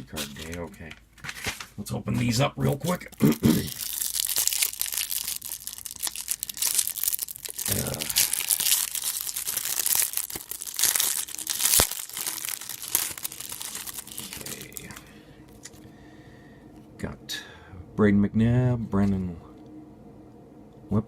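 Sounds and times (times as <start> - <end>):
wrappers tearing and crinkling: 2.6 - 15.8
wrapper sharp snap: 9.8 - 14.5.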